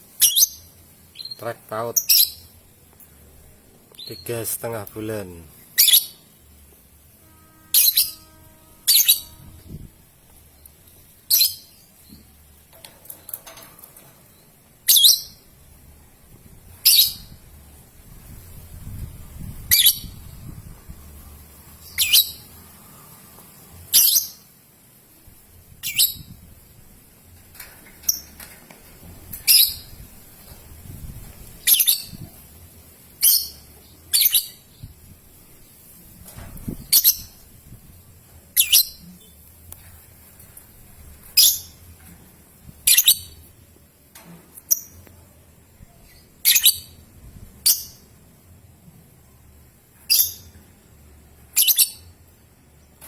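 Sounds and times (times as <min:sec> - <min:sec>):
lovebird chirping: 0:00.2 - 0:02.6, 0:05.7 - 0:06.3, 0:07.2 - 0:09.9, 0:10.5 - 0:12.3, 0:14.3 - 0:15.5, 0:16.8 - 0:17.4, 0:19.7 - 0:20.3, 0:21.8 - 0:22.6, 0:23.9 - 0:24.5, 0:25.8 - 0:26.4, 0:31.6 - 0:32.4, 0:33.2 - 0:35.0, 0:36.8 - 0:37.5, 0:38.6 - 0:39.5, 0:41.4 - 0:41.8, 0:42.8 - 0:43.4, 0:45.8 - 0:48.1, 0:50.0 - 0:50.6, 0:51.5 - 0:52.2.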